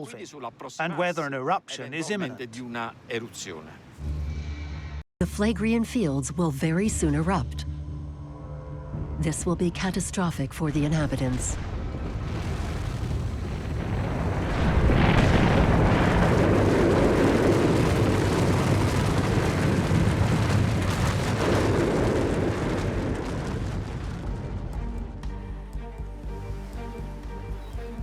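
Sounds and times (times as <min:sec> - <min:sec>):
volcanic eruption roar: 0:11.0 - 0:25.1.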